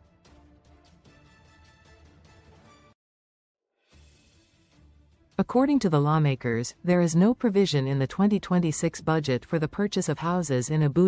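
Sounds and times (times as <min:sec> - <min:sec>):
soft background music: 0:03.9 - 0:11.0.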